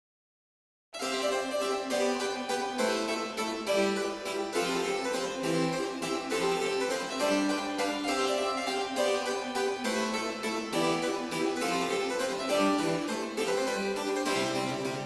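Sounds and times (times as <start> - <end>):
harpsichord music: 1.0 - 15.0.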